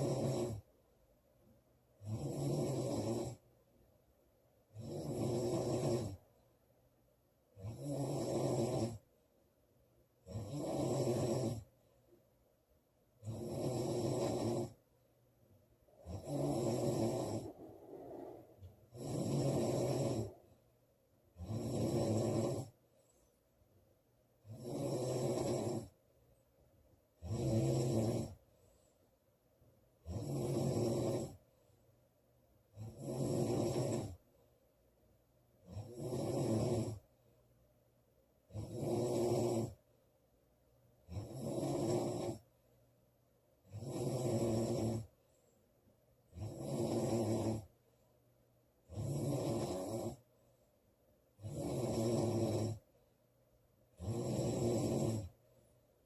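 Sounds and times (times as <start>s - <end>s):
girl snoring loudly: 0.0s - 0.6s, 2.0s - 3.4s, 4.8s - 6.2s, 7.6s - 9.0s, 10.3s - 11.7s, 13.2s - 14.8s, 16.0s - 20.4s, 21.4s - 22.7s, 24.5s - 25.9s, 27.2s - 28.4s, 30.1s - 31.4s, 32.8s - 34.2s, 35.7s - 37.0s, 38.5s - 39.8s, 41.1s - 42.4s, 43.7s - 45.1s, 46.4s - 47.7s, 48.9s - 50.2s, 51.4s - 52.8s, 54.0s - 55.3s
quiet breaths: 0.0s - 9.3s, 10.1s - 34.8s, 35.6s - 40.2s, 40.8s - 43.0s, 43.6s - 56.0s.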